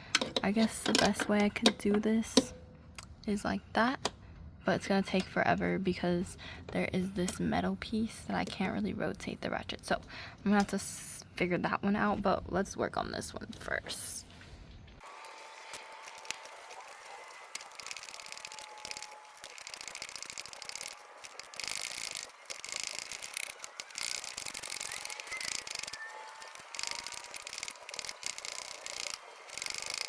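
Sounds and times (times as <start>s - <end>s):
hand ratchet clicking: 0.0s - 2.6s, 15.2s - 30.0s.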